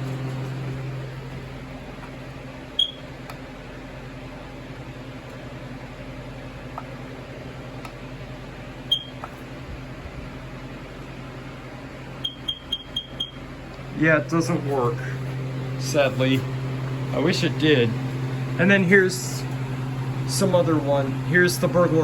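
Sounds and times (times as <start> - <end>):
smoke alarm high chirp: 2.8 - 3.1, 8.9 - 9.2, 12.2 - 13.4.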